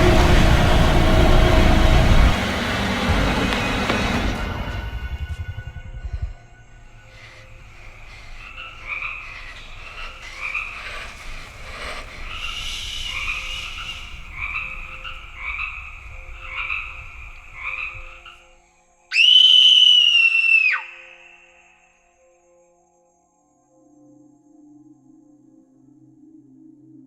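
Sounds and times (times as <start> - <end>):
loud high held tone: 0.0 - 15.1, 19.1 - 21.9
croaking animal calls: 7.2 - 18.5.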